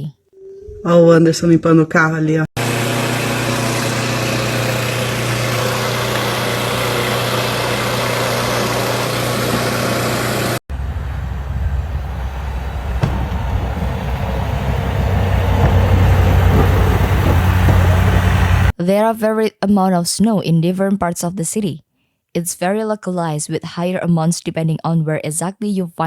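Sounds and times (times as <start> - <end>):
deep rough engine rumble: 2.6 - 18.7
vehicle engine running: 2.6 - 18.7.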